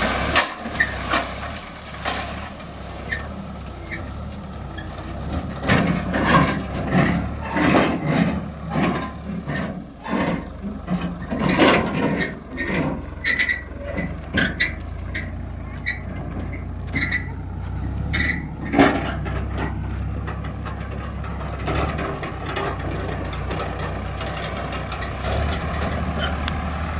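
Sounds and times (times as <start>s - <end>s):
diesel engine running: 0.0s - 26.9s.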